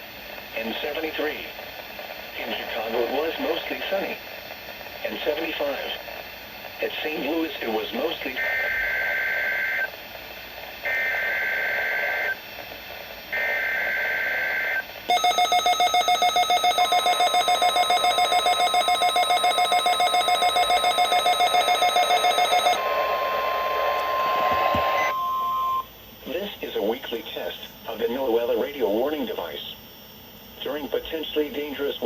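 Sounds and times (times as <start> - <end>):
rapid pulsing alarm beeps: 15.1 - 22.8
steady warning alarm tone: 15.1 - 22.8.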